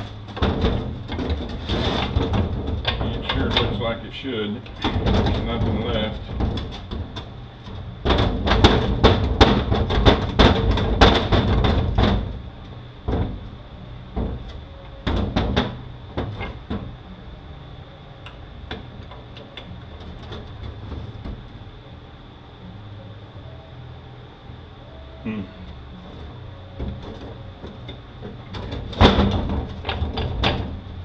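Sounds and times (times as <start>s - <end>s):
knocking on transmission parts: 0.0s - 4.1s, 4.7s - 17.0s, 26.8s - 31.0s.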